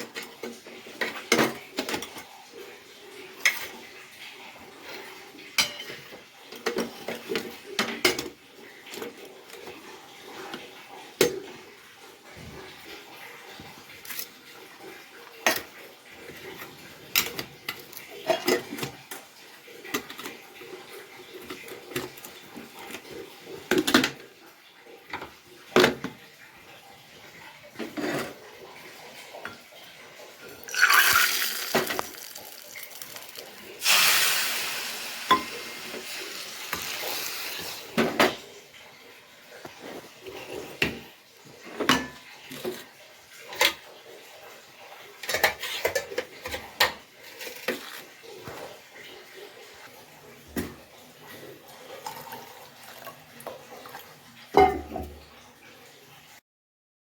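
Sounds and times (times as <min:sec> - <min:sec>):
steel dishes and pots clattering: 0:00.0 - 0:02.7, 0:03.3 - 0:04.2, 0:04.8 - 0:11.6, 0:13.5 - 0:24.4, 0:27.5 - 0:38.5, 0:39.6 - 0:49.2, 0:54.5 - 0:55.3
tap running: 0:30.5 - 0:34.1.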